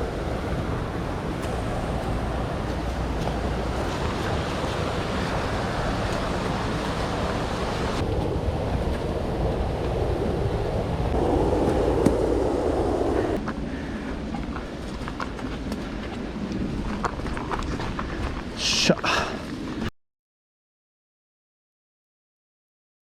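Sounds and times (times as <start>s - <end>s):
mountain stream rushing water: 0.0s - 17.9s.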